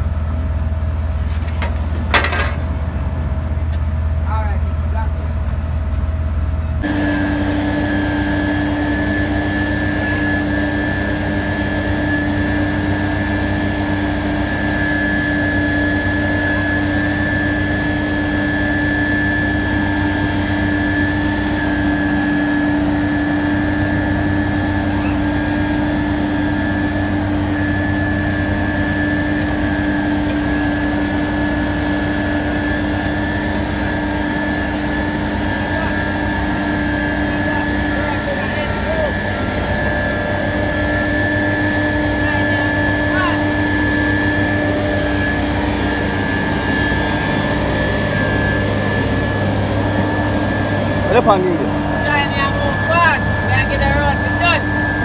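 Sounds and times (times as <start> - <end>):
paving machine engine humming: 0.0 - 55.0
high-pitched whine: 31.4 - 55.0.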